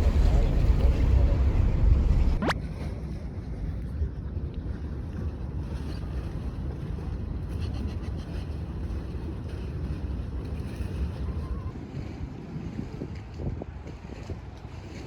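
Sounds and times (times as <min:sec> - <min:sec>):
low rumble: 0:00.0 - 0:05.5
wind noise on microphone: 0:00.0 - 0:15.0.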